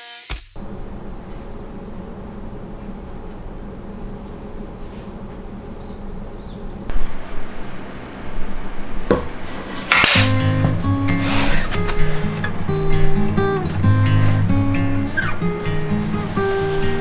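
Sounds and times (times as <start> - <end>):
buzzing hum with high whine: 0.0 - 17.0
guitar music: 10.1 - 17.0.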